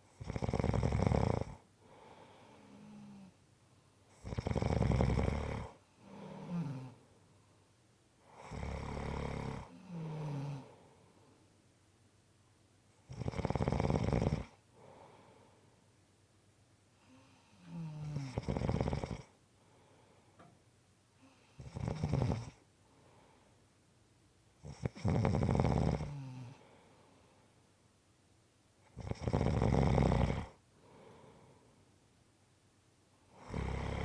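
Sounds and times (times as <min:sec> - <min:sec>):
soft breath out: 0:01.8 - 0:03.4, 0:14.7 - 0:15.8, 0:19.6 - 0:20.6, 0:22.8 - 0:23.6, 0:30.8 - 0:31.9
person snoring: 0:04.2 - 0:07.0, 0:17.7 - 0:19.3, 0:24.7 - 0:26.6, 0:29.0 - 0:30.6, 0:33.4 - 0:34.0.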